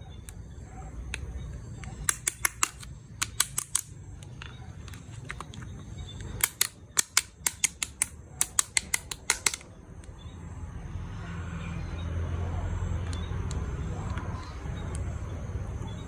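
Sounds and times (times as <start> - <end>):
plastic toy clicks: 1.8 - 10.2.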